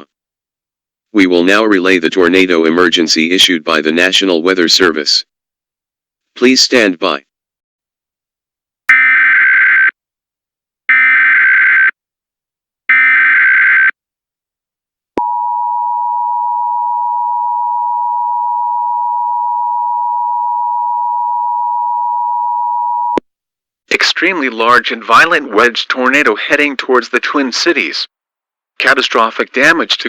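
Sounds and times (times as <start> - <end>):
steady two-tone alarm: 12.9 - 14.0, 15.2 - 23.2.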